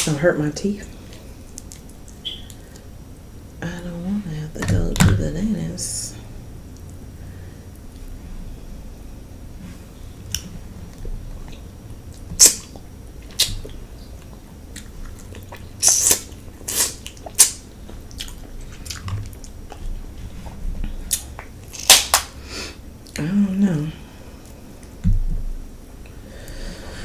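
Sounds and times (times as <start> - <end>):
chewing: 10.3 - 19.9.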